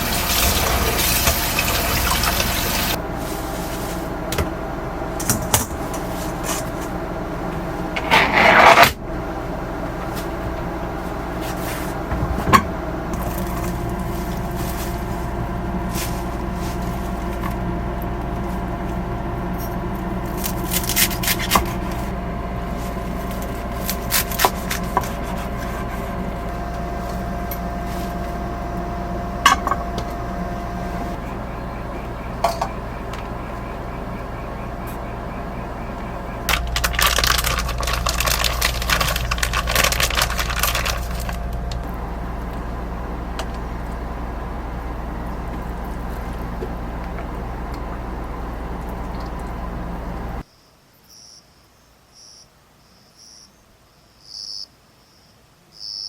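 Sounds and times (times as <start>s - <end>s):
steady low hum: 0.0s - 50.5s
small hard objects clinking: 36.5s - 41.8s.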